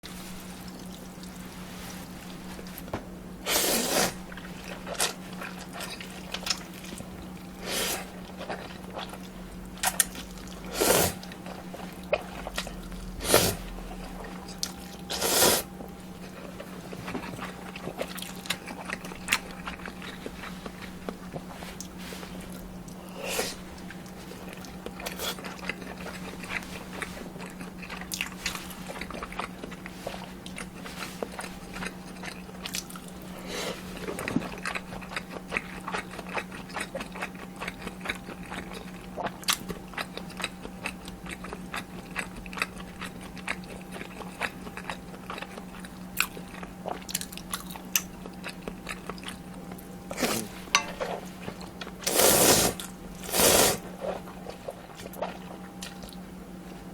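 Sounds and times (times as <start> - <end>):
close chewing and biting: 15.8 - 23.1, 23.8 - 50.8, 51.4 - 56.2.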